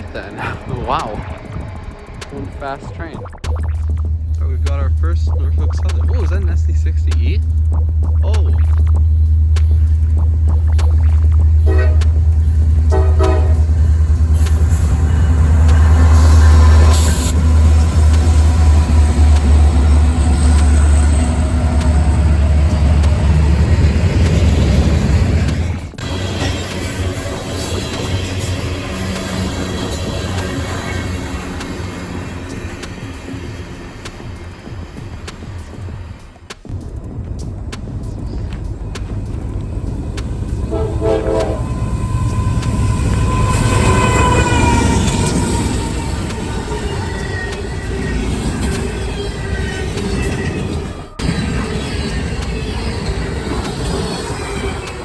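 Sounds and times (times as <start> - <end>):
freight train rumbling past: 0.0 - 3.2, 4.2 - 55.0
locomotive horn blasts: 11.6 - 13.9, 40.6 - 45.3.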